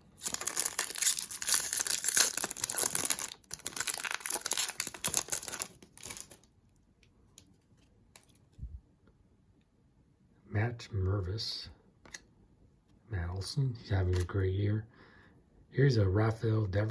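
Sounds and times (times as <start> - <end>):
foil wrapper crinkling and tearing: 0.0 - 6.5.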